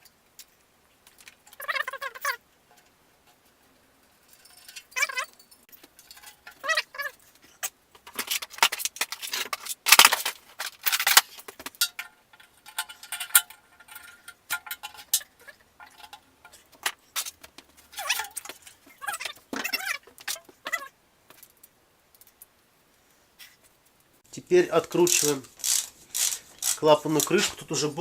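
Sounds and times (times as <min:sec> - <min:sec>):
hand tools clinking and knocking: 0:00.0 - 0:22.6, 0:24.8 - 0:28.0.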